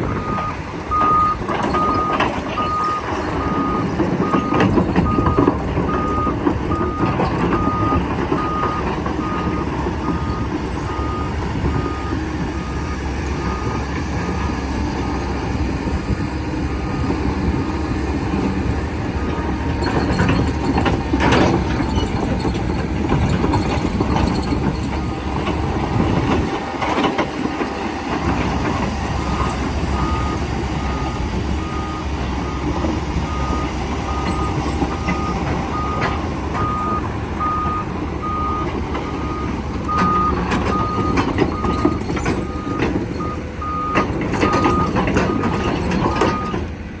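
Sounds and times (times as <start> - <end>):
excavator diesel engine running: 0.0 - 47.0
travel alarm beeping: 0.1 - 14.4, 23.9 - 45.6.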